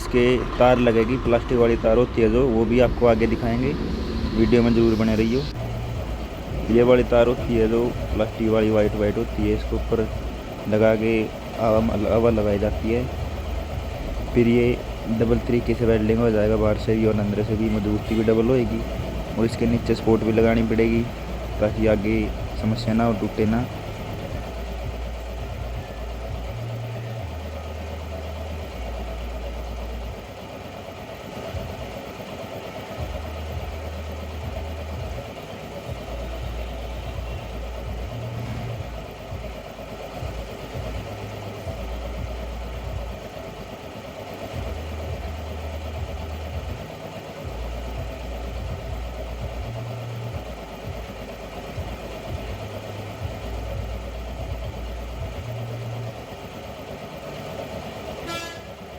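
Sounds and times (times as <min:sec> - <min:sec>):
blown air hissing: 0:00.0 - 0:58.8
air compressor humming: 0:00.0 - 0:58.9.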